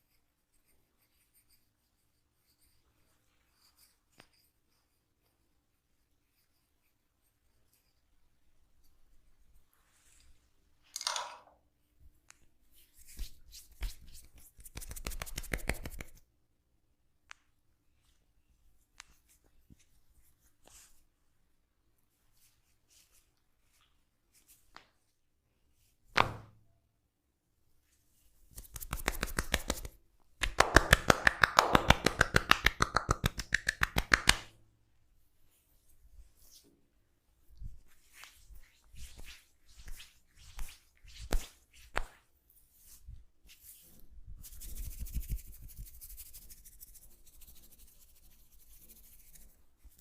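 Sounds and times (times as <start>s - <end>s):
hands rubbing head: 12.7s - 16.2s, 28.1s - 34.5s, 37.6s - 50.0s
taps and pats on head: 13.1s - 16.2s, 26.1s - 26.6s, 28.5s - 34.5s, 39.0s - 42.2s.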